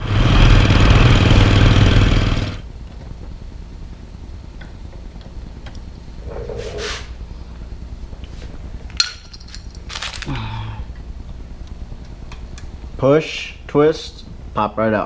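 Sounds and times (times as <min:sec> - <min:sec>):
motorcycle engine running: 0:00.0 - 0:05.6.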